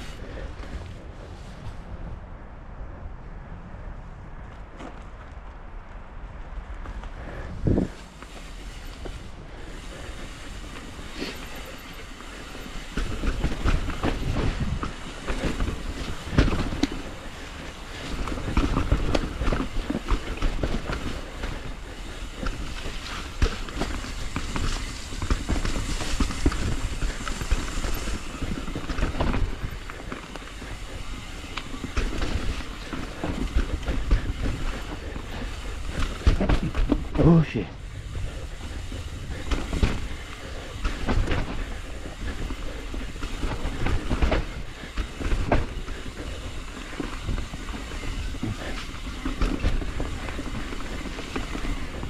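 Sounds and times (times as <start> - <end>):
mountain bike rattling: 0.0 - 1.5, 6.8 - 52.0
tyres rumbling over dirt: 6.9 - 52.0.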